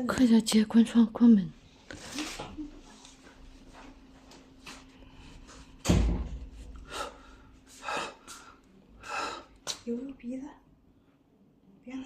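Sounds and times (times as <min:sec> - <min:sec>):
door banging shut: 0:05.8 - 0:06.4.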